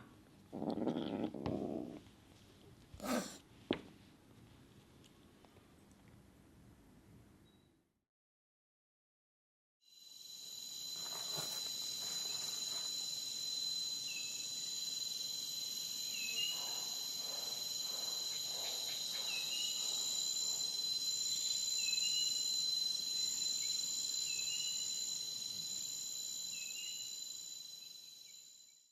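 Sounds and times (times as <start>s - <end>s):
high-pitched insect chorus: 9.9s - 28.9s.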